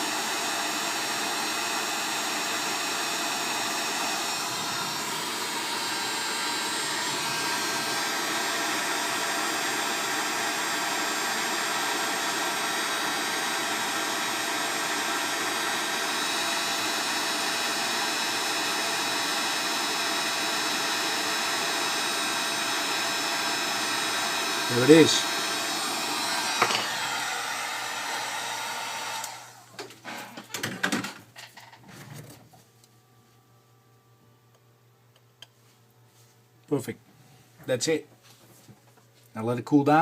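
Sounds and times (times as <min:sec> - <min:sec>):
hot air gun blowing: 0:00.0 - 0:29.7.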